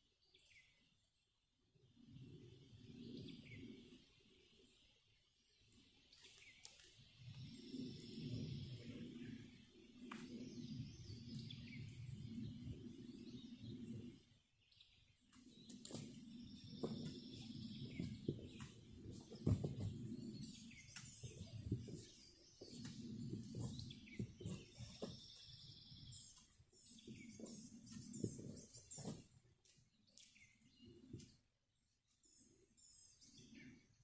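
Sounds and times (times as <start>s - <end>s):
songbirds chirping and trilling: 0.0s - 34.0s
low rustling and knocks: 15.9s - 26.2s.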